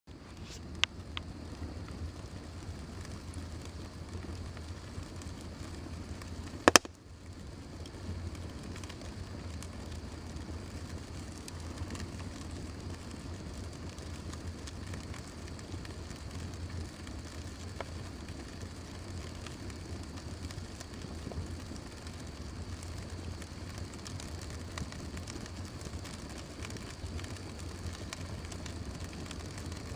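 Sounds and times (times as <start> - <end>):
fire hissing and crackling: 0.1 - 29.9
loud sharp pop: 6.7 - 6.9.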